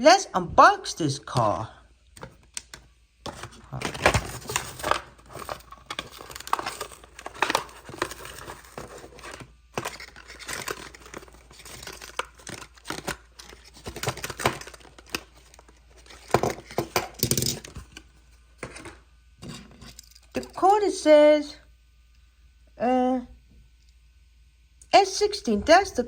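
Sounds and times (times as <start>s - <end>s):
cardboard and plastic tearing: 2.2s - 20.0s.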